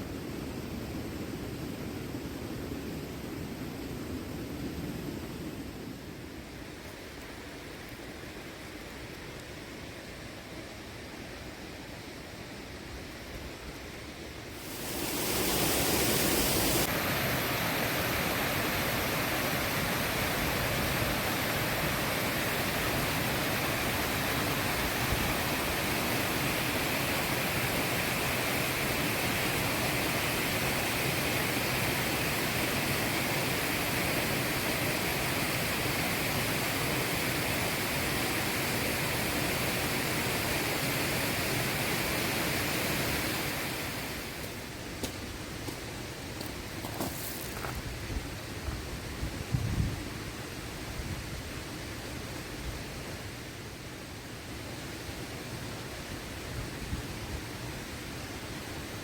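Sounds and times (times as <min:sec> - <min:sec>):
waterfall rushing: 0:14.5 - 0:44.6.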